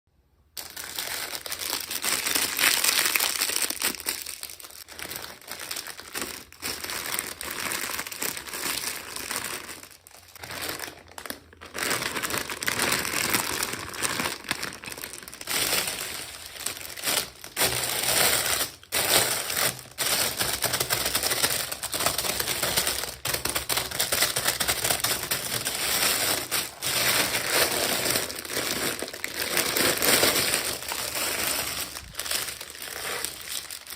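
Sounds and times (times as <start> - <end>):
plastic packaging crinkling: 0.5 - 33.9.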